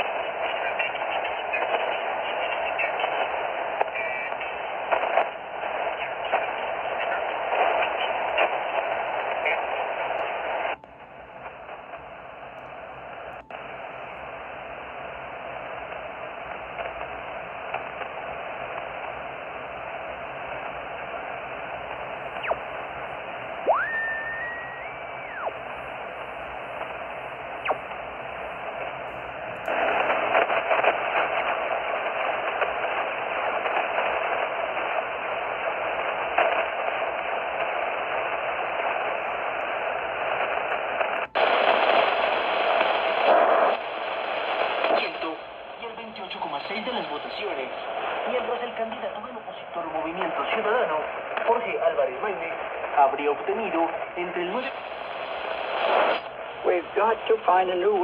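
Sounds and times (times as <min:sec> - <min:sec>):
radio static: 0:00.0 - 0:58.0
rising heterodyne whistle: 0:23.7 - 0:25.4.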